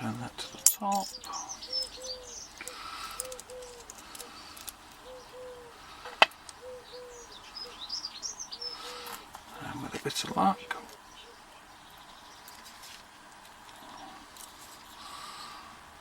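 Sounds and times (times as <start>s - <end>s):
dove cooing: 0.0s - 11.7s
small birds chirping: 0.0s - 16.0s.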